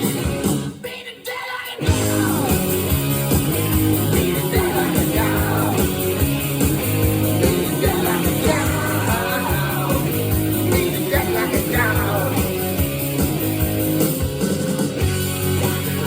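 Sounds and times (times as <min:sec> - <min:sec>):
electric guitar: 0:00.0 - 0:16.0
person singing: 0:00.8 - 0:03.0, 0:04.0 - 0:06.2, 0:07.3 - 0:12.7
steady drum beat: 0:01.8 - 0:16.0.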